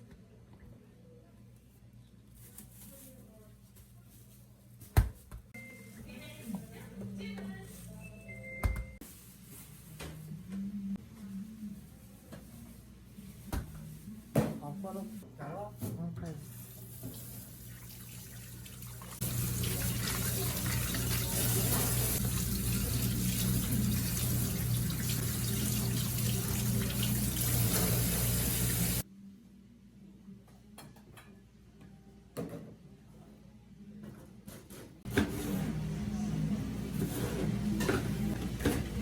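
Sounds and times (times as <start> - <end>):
tap water running into sink: 16.9 - 29.0.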